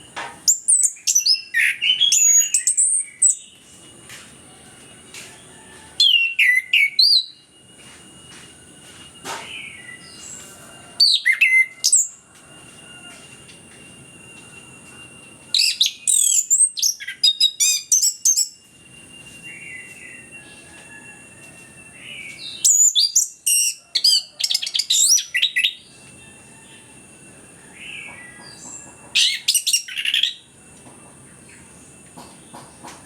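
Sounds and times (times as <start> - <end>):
faint steady high tone: 2.5 - 22.6, 23.7 - 32.7.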